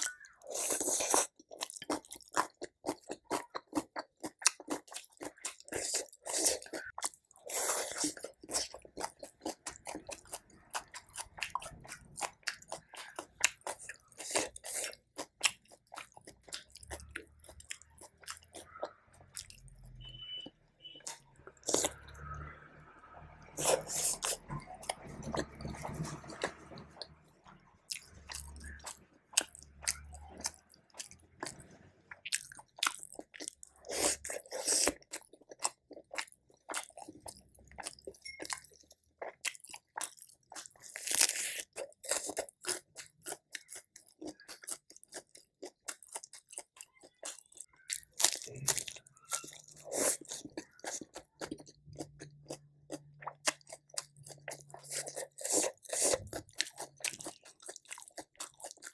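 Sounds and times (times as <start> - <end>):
person chewing crunchy food: 0.0 - 58.9.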